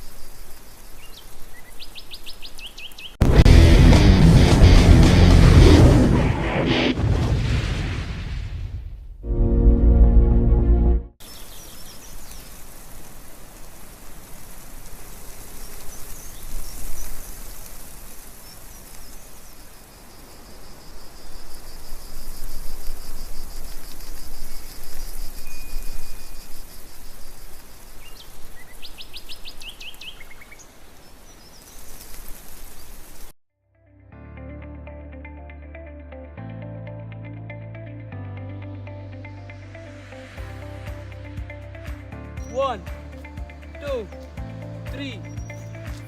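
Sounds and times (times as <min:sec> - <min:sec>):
steady outdoor hiss: 0:00.0 - 0:05.5, 0:11.2 - 0:33.3, 0:39.2 - 0:46.0
run of stepped notes: 0:03.2 - 0:05.8, 0:41.4 - 0:46.0
music track: 0:03.2 - 0:06.9, 0:09.2 - 0:11.2, 0:34.1 - 0:46.0
bird chirps: 0:24.2 - 0:31.9, 0:44.1 - 0:46.0.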